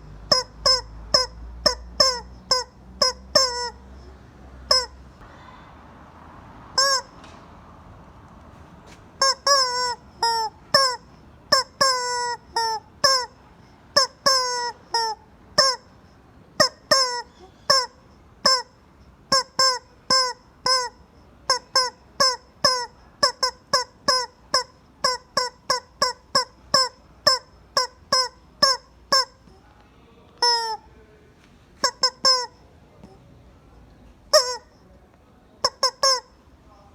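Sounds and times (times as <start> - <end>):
rubber chicken squawking: 0.0 - 5.0, 6.8 - 7.2, 9.2 - 29.6, 30.4 - 30.9, 31.8 - 33.2, 34.3 - 34.8, 35.6 - 36.4.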